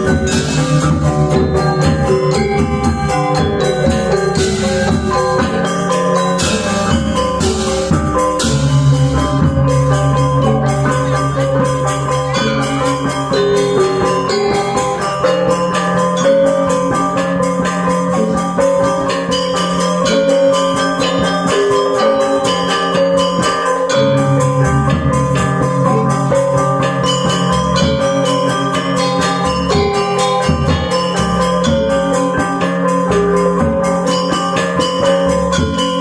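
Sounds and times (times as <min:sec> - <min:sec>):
metallophones struck in fast figures: 0:00.0 - 0:36.0
low gong tones: 0:06.9 - 0:14.6, 0:23.9 - 0:28.3.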